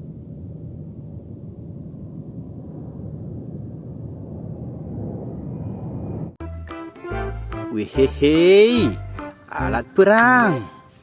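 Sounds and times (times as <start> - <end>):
jet engine rumble: 0.0 - 6.4.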